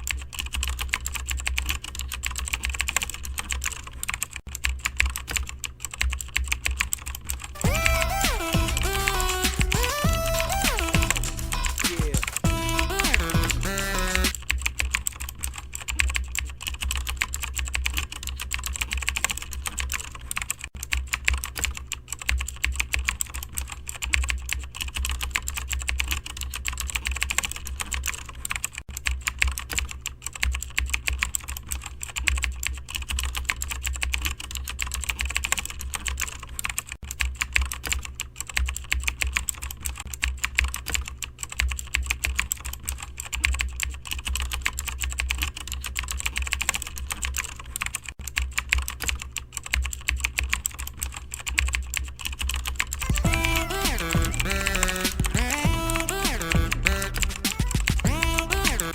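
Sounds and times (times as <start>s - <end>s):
keyboard typing: 0.0s - 58.9s
steady low hum: 4.8s - 20.3s, 52.2s - 58.9s.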